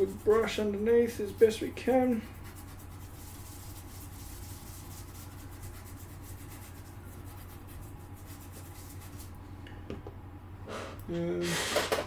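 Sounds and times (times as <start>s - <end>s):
brush scrubbing circuit board: 0.0s - 9.3s.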